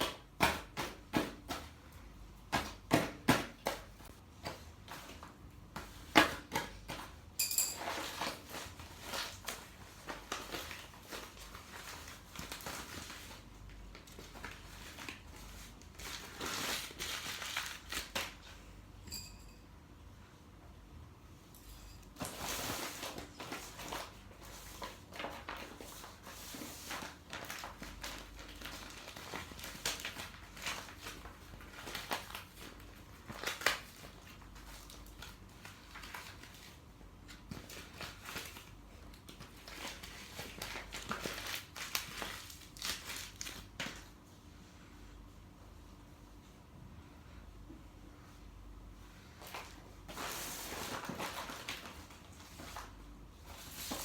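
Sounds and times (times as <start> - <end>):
paper rustling and crinkling: 7.8 - 18.6, 22.2 - 44.2, 49.2 - 54.0.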